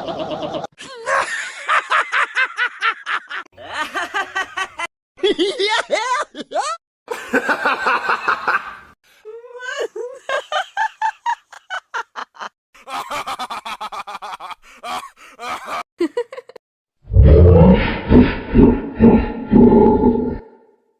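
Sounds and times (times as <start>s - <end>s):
loud deep sound: 17.1s - 20.5s.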